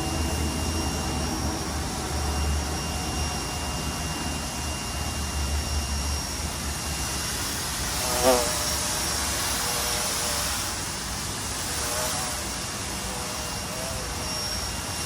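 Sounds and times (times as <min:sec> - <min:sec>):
pressure washer spraying water: 0:06.5 - 0:14.9.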